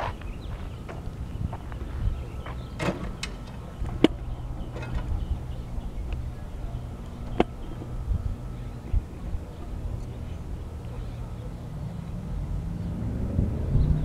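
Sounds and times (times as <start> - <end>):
tractor engine humming: 0.0 - 14.0.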